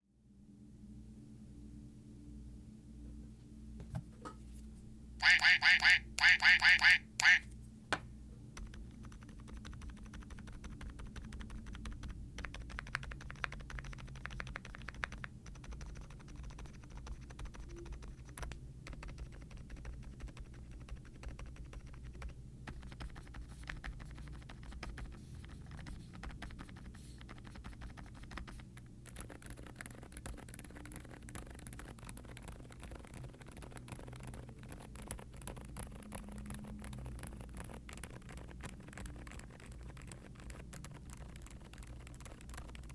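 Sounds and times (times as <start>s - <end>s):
muted keyboard typing: 8.6s - 42.9s.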